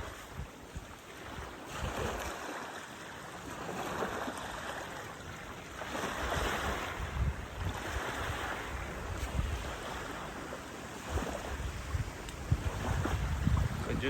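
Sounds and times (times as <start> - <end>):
wind buffeting microphone: 0.0 - 2.5, 3.4 - 14.0
water washing at shoreline: 0.0 - 14.0.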